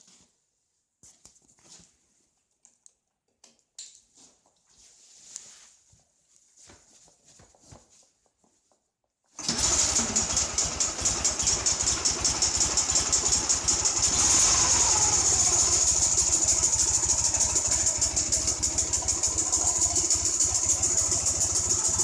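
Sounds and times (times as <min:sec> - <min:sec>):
motorcycle engine idling: 0:09.4 - 0:22.0.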